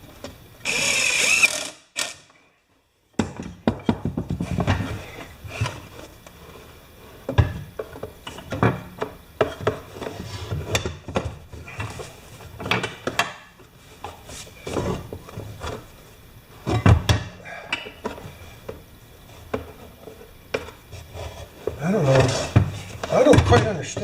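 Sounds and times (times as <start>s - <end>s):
air compressor parts clicking: 0.7s - 2.4s.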